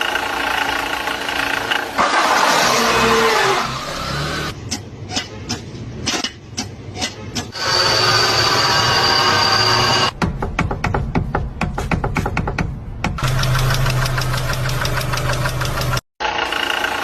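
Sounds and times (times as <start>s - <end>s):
sharp mechanical ticking: 13.0s - 16.0s.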